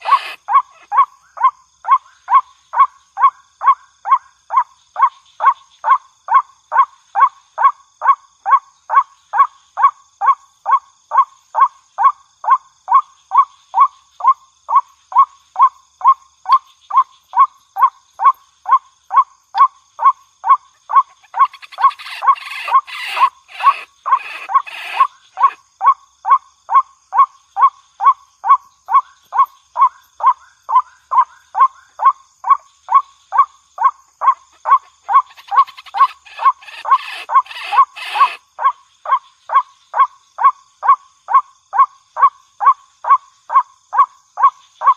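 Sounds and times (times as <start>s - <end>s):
waterhen call: 0.0s - 1.1s, 20.5s - 25.6s, 34.2s - 38.7s.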